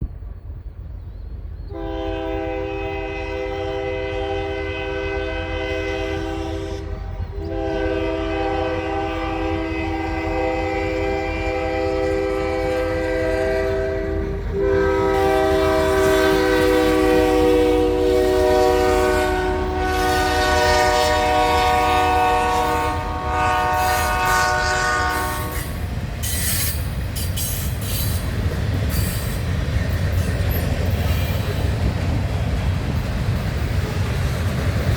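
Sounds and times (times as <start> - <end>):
rumble of train engines: 0.0 - 34.9
locomotive air horn blasts: 1.7 - 26.8
clattering train wheels: 7.1 - 34.9.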